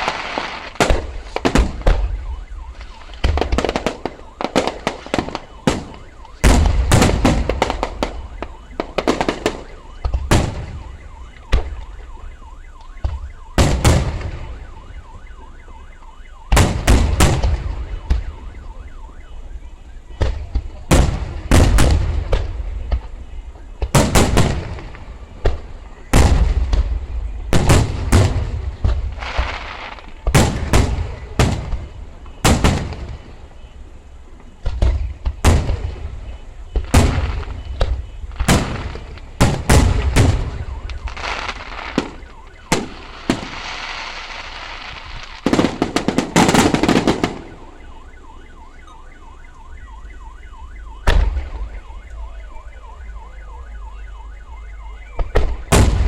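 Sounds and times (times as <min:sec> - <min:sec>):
fireworks crackling: 0:00.0 - 0:48.6, 0:55.1 - 0:56.0
warbling electronic alarm: 0:01.8 - 0:20.3, 0:35.8 - 0:55.7.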